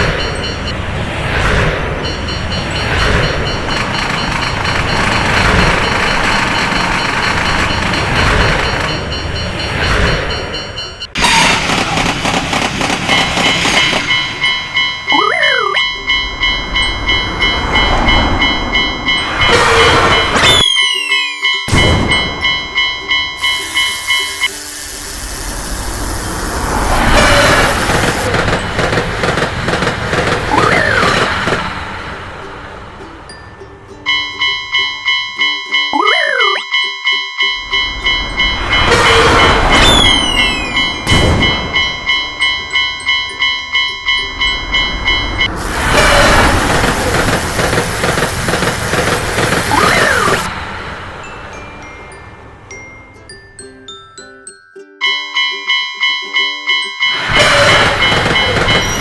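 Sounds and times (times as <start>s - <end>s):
wheels clattering over rail joints: 0.0s - 15.1s, 24.9s - 33.3s, 37.9s - 51.5s, 57.1s - 59.0s
train rumble passing: 0.0s - 15.2s, 15.8s - 21.0s, 21.7s - 35.8s, 37.5s - 53.0s, 56.8s - 59.0s
crossing alarm bell ringing: 0.0s - 59.0s.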